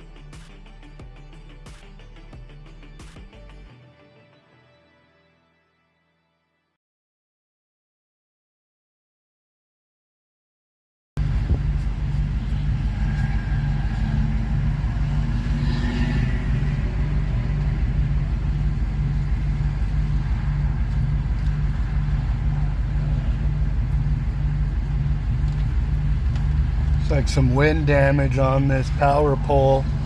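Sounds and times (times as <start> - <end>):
wind buffeting microphone: 11.2 - 12.9
highway traffic passing: 11.2 - 30.0.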